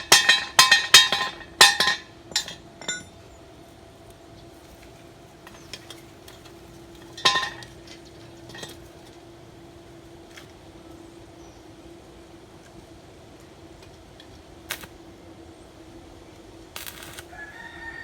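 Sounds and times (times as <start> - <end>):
ringing metal clanks: 0.0 - 3.2, 7.0 - 7.8.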